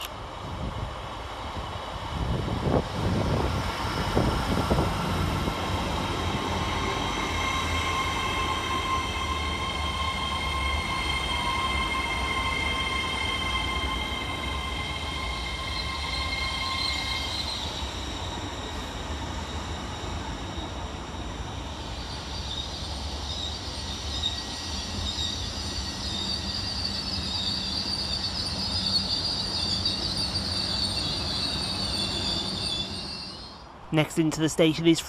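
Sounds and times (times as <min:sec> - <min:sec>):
train rumbling: 0:00.0 - 0:35.0
high-pitched squeal: 0:06.6 - 0:19.8, 0:21.8 - 0:33.7.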